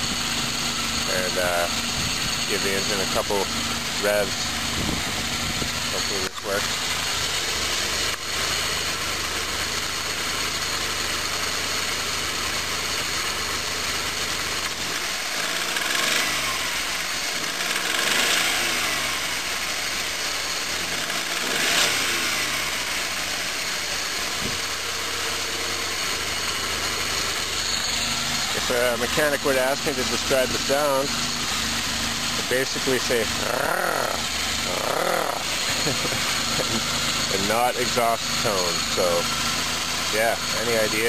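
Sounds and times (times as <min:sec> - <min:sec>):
car engine idling and revving: 0:00.0 - 0:41.0
engine knocking: 0:00.0 - 0:41.0.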